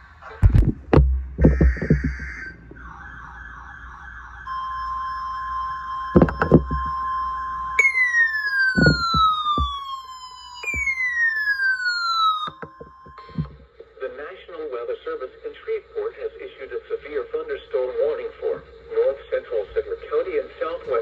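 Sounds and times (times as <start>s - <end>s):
low thumps: 0.4s - 2.9s, 6.2s - 7.0s, 8.8s - 9.8s, 10.6s - 11.0s, 12.5s - 13.6s
falling siren-like sweeps: 1.4s - 13.4s
steady single-pitch tone: 6.2s - 7.1s, 8.8s - 9.8s, 12.5s - 13.6s
warbling alert tone: 8.8s - 9.8s.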